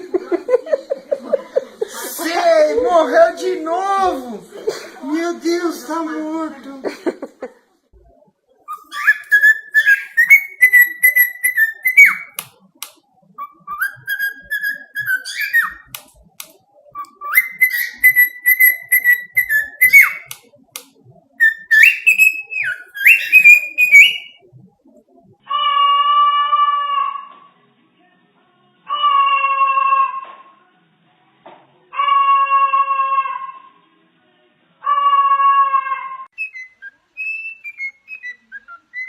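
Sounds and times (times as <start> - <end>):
bird whistling a tune: 8.7 - 12.4, 13.4 - 16.0, 17.0 - 20.4, 21.4 - 24.4, 36.4 - 39.0.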